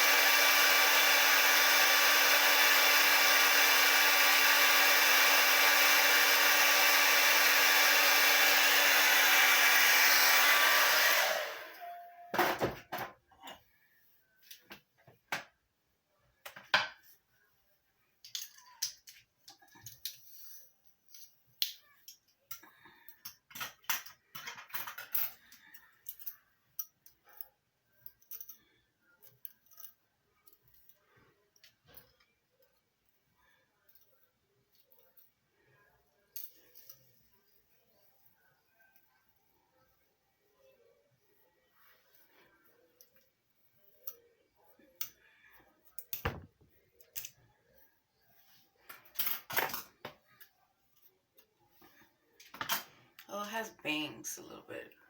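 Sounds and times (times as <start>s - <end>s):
hair dryer blowing: 0.0s - 12.6s
small clicks and handling noises: 14.4s - 15.6s, 18.2s - 32.9s, 33.8s - 35.3s, 46.8s - 47.8s.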